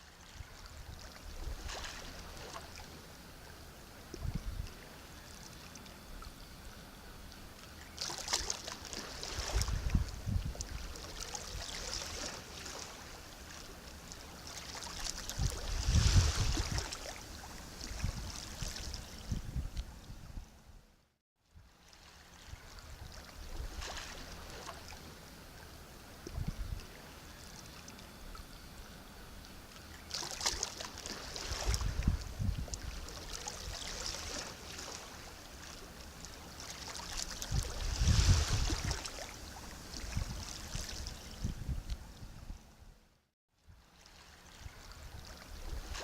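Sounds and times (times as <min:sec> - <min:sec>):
sea waves washing in: 0:08.0 - 0:19.1, 0:30.0 - 0:41.3
waves breaking with low thuds: 0:08.1 - 0:13.0, 0:14.5 - 0:17.2, 0:17.8 - 0:20.5, 0:30.2 - 0:35.2, 0:36.6 - 0:42.6.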